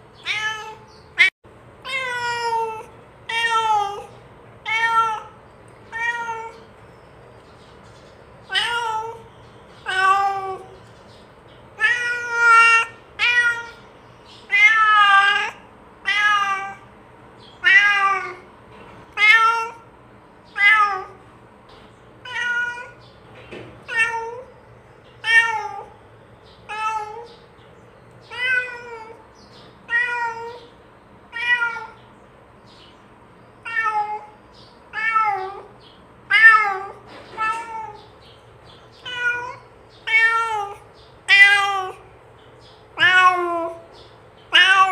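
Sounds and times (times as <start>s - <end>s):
cat meowing: 0.2s - 6.7s, 8.5s - 10.8s, 11.8s - 13.9s, 14.5s - 16.9s, 17.6s - 18.5s, 19.1s - 19.9s, 20.5s - 21.2s, 22.2s - 23.0s, 23.8s - 24.5s, 25.2s - 26.0s, 26.7s - 27.4s, 28.2s - 29.2s, 29.8s - 32.0s, 33.6s - 38.2s, 39.0s - 42.1s, 43.0s - 43.9s, 44.5s - 44.9s.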